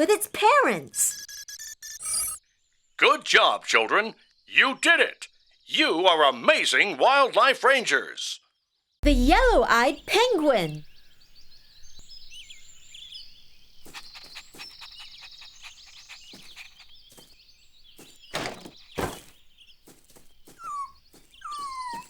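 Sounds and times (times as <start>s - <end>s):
small birds chirping: 8.6s - 22.0s
louder thuds: 18.2s - 19.4s.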